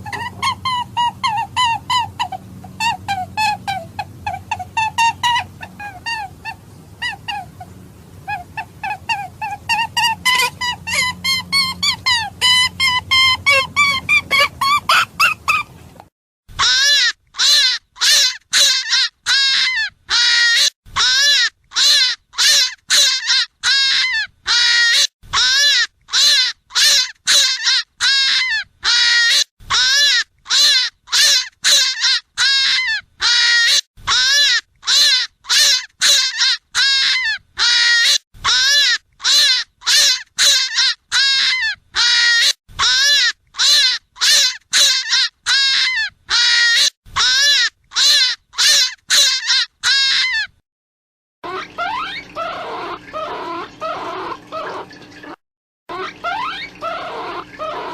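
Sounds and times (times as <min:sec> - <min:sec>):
hare distress screams: 0:16.6 - 0:50.5.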